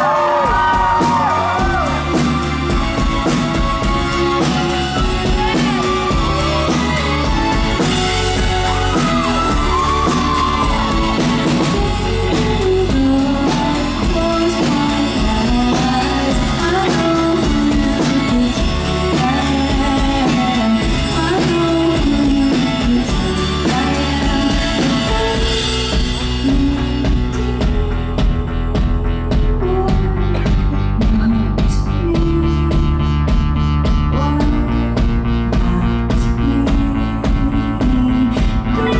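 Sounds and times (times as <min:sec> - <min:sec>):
woman singing: 0:00.0 - 0:33.4, 0:34.1 - 0:38.9
live rock band: 0:00.0 - 0:38.9.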